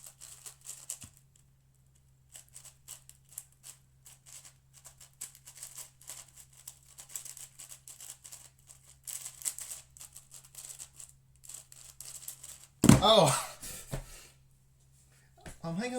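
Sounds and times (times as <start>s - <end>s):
speed cube plastic clicking: 0.1s - 1.2s, 2.3s - 12.7s.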